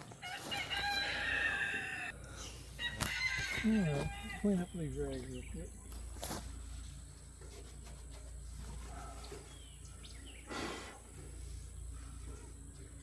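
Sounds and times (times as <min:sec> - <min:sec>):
rustling or scuffing: 0:00.0 - 0:01.3, 0:02.6 - 0:04.8, 0:05.9 - 0:09.8.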